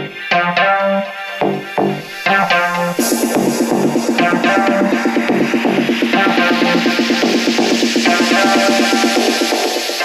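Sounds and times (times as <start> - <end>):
plucked synth notes: 0.0 - 10.0
fast repeating synth pattern: 1.4 - 10.0
high rushing hiss: 2.0 - 10.0.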